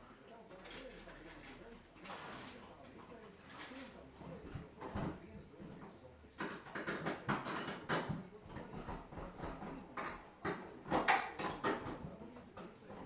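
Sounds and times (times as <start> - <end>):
hard objects knocking and clicking: 4.6 - 13.0.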